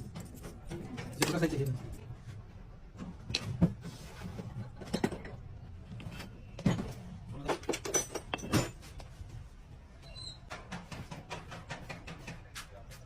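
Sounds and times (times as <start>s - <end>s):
objects knocking and clinking: 6.6s - 9.0s.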